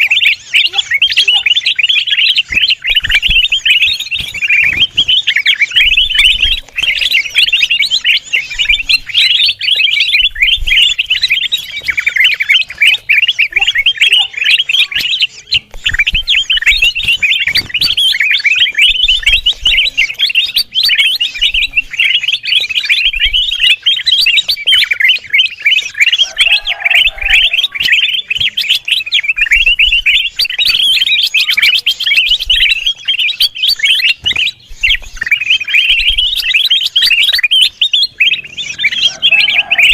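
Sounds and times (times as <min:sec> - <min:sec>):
bird chattering high chirps: 0:00.0 - 0:39.9.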